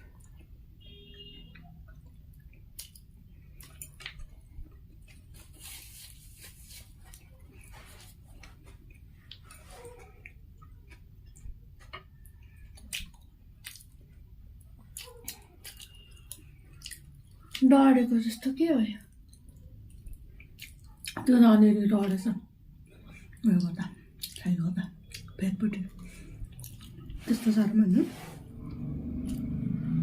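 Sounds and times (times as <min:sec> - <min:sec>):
close-up chewing of food: 0:01.5 - 0:06.0, 0:06.9 - 0:17.7, 0:19.1 - 0:21.2, 0:24.1 - 0:27.3.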